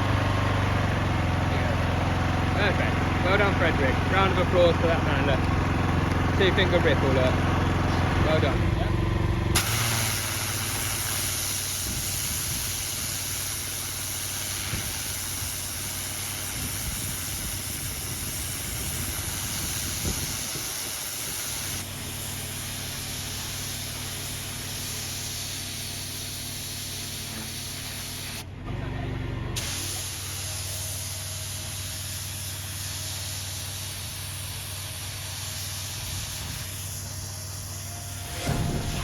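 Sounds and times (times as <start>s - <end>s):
pressure washer engine running: 0.0s - 39.0s
strong hiss: 9.5s - 28.4s, 29.6s - 39.0s.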